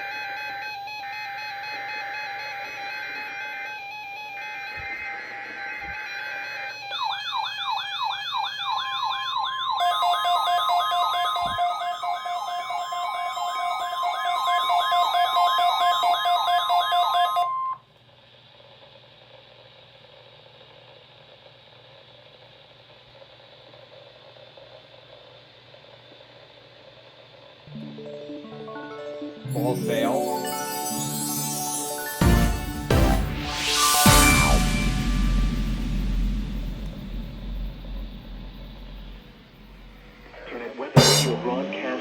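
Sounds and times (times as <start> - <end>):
steady alarm tone: 0.0 - 17.8, 29.7 - 42.0
overlapping warbling alarm tones: 4.3 - 17.7
rapid beeping: 32.3 - 42.0.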